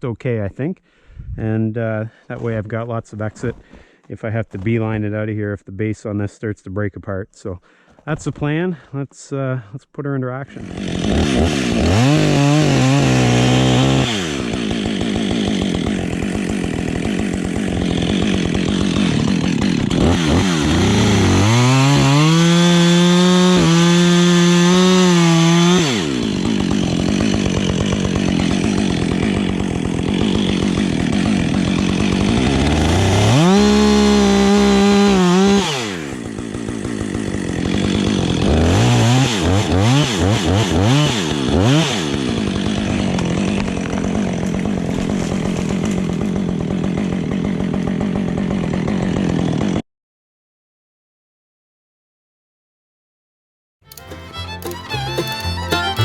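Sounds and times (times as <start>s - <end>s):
chainsaw cutting wood: 10.5s - 49.8s, 53.9s - 56.0s.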